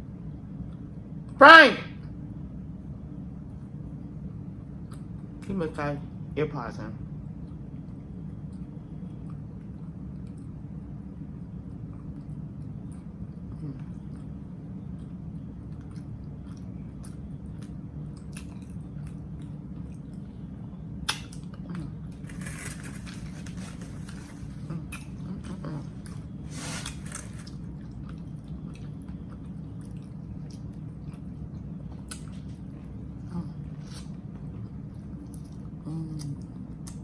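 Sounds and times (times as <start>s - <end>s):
steady low hum: 0.0s - 37.0s
chewing and biting sandwich: 7.3s - 37.0s
crackly rustling: 22.1s - 27.6s.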